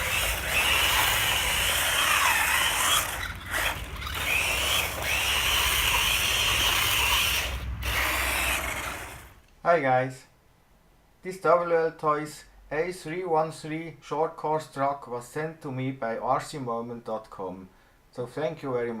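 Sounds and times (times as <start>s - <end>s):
small electric motor whining: 0.0s - 9.4s.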